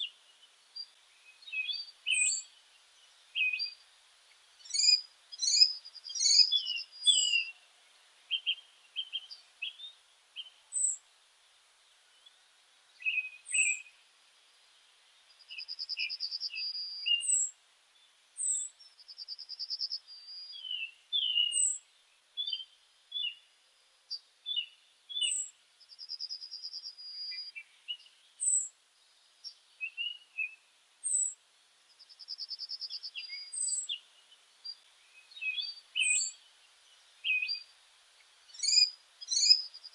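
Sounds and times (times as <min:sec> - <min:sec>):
birds chirping: 0:00.0 - 0:11.1, 0:11.8 - 0:39.9
bird trills: 0:04.6 - 0:07.6, 0:34.7 - 0:36.4, 0:38.5 - 0:39.9.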